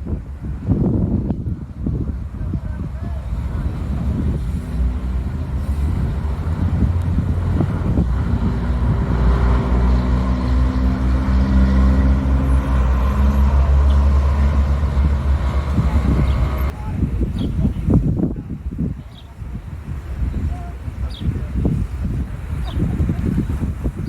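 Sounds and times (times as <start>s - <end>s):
vehicle engine rumbling: 0.0s - 19.0s.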